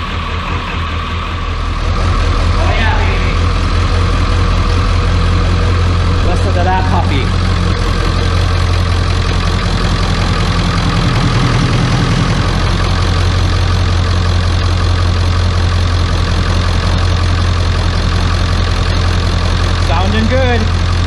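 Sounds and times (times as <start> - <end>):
diesel truck engine idling: 0.0 - 21.0.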